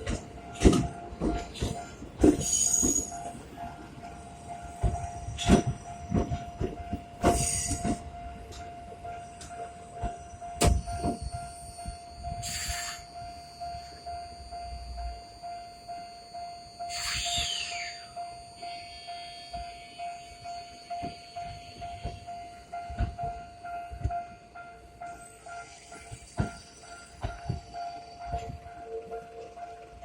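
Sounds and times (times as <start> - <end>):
train wheels clunking over rail joints: 0.0 - 12.8, 20.9 - 24.3, 25.2 - 30.0
level-crossing bell dinging: 0.0 - 30.0
wheel squeal: 10.2 - 14.1, 16.7 - 22.7.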